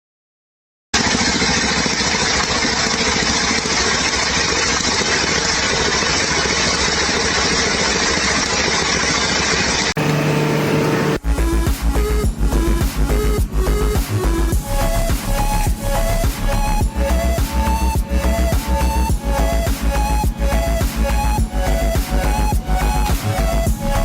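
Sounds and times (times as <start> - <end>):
loud engine running: 1.0 - 24.0
steady hum: 10.0 - 24.0
music with a pulsing beat: 11.2 - 24.0.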